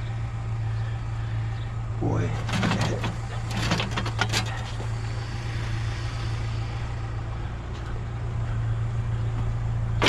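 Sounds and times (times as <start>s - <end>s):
vehicle engine idling: 0.0s - 10.0s.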